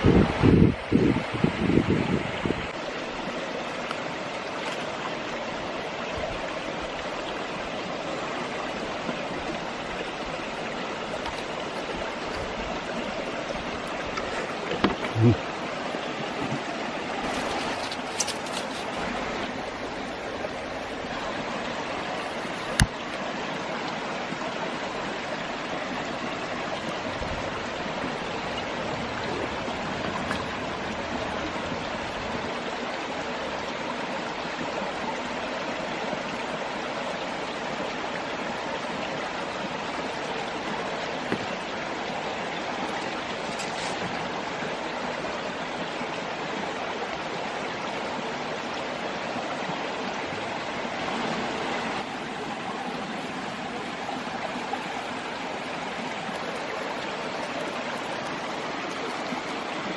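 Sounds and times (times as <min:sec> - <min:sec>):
stream babbling over rocks: 0:00.0 - 0:59.9.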